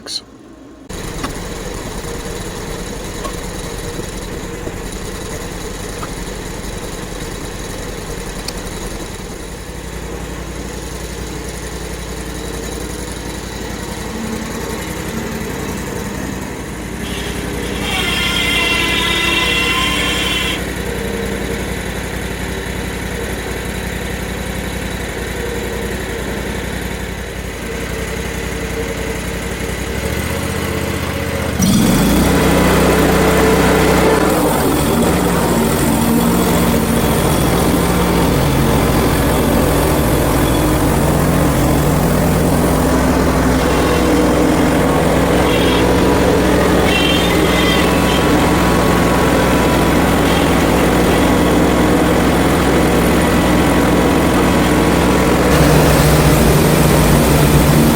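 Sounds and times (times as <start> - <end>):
small gas engine running: 0.0 - 57.9.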